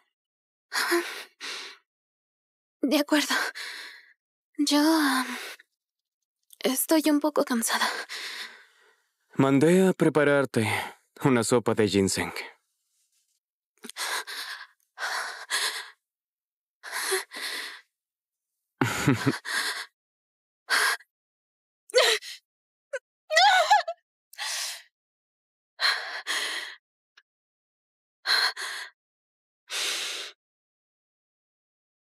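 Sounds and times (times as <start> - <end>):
person gasping and sighing: 18.8 - 19.9.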